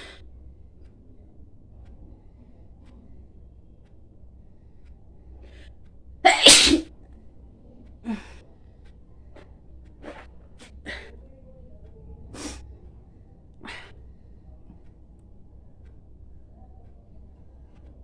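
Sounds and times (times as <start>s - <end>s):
faint breathy sounds: 0.0s - 0.6s, 7.7s - 15.0s
woman sneezing: 6.3s - 6.8s.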